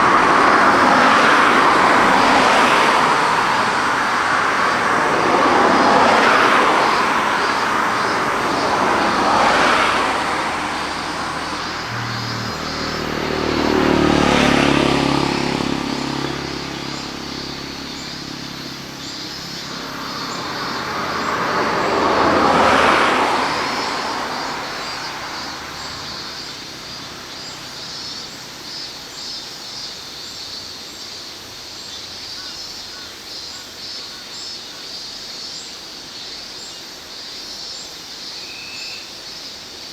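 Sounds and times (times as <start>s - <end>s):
vehicles passing: 0.0s - 32.5s
insects chirring: 0.0s - 39.9s.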